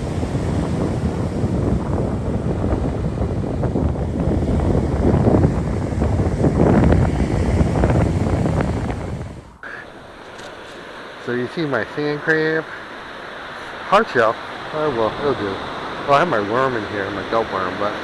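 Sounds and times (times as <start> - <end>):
wind buffeting microphone: 0.0 - 9.6
ocean surf: 0.0 - 18.0.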